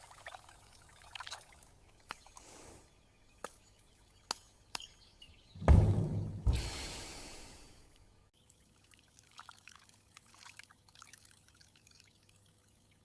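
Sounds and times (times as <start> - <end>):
heavy low bump: 5.6 - 7.2.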